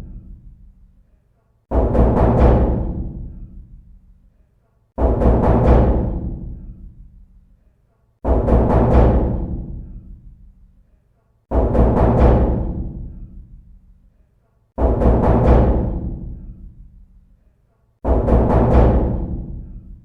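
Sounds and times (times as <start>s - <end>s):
knocking on a door: 1.7s - 3.3s, 5.0s - 6.5s, 8.2s - 9.8s, 11.5s - 13.1s, 14.8s - 16.4s, 18.0s - 19.6s.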